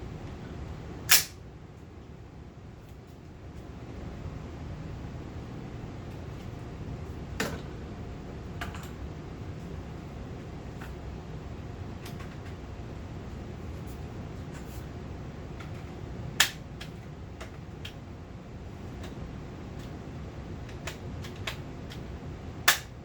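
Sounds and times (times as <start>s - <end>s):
steady low hum: 0.0s - 23.0s
sharp metallic snaps: 1.1s - 1.4s, 22.7s - 23.0s.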